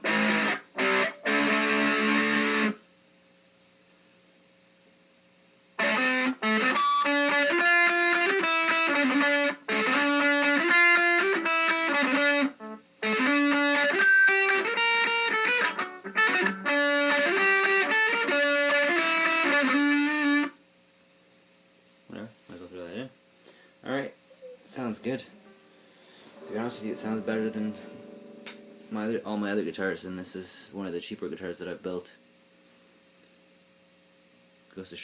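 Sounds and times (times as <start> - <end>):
distorted electric guitar riffs: 0.0 - 2.8, 5.8 - 20.5, 24.4 - 29.6.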